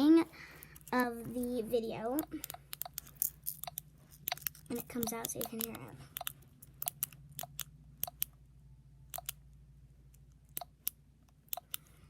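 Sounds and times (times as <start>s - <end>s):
fidget toy clicking: 2.1s - 8.4s, 9.1s - 9.4s, 10.4s - 12.0s.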